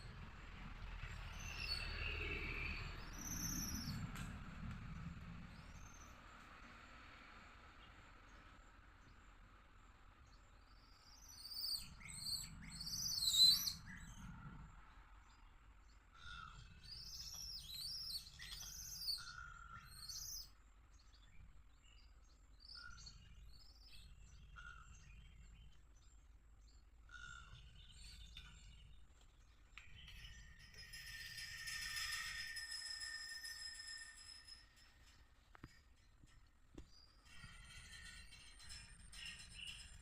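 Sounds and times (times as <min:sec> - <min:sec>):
birds chirping and calling: 0:11.2 - 0:14.4, 0:16.2 - 0:20.5.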